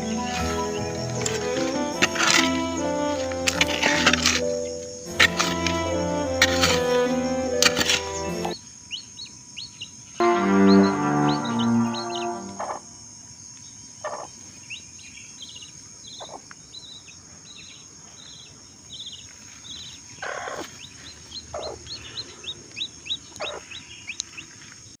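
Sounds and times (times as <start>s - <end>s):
birds chirping: 0.0s - 13.0s, 14.1s - 24.5s
high insect drone: 0.0s - 16.4s.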